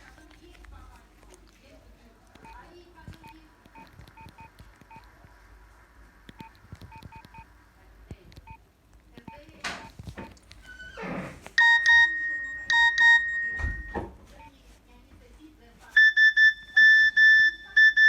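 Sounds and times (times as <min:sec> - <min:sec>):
phone keypad beeps and clicks: 0:03.2 - 0:05.1, 0:06.3 - 0:07.5, 0:11.6 - 0:14.6, 0:16.0 - 0:18.0.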